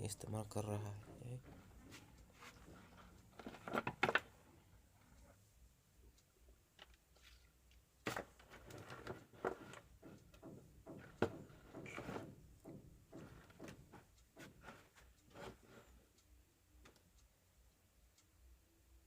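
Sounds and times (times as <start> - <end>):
small clicks and taps: 6.1 - 18.3
knock: 10.0 - 14.5.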